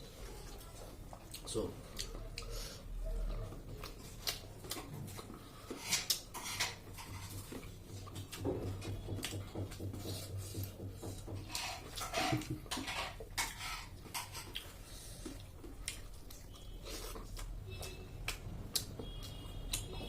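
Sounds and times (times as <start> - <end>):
chewing and mouth smacks: 0.4 - 5.4, 12.3 - 20.0.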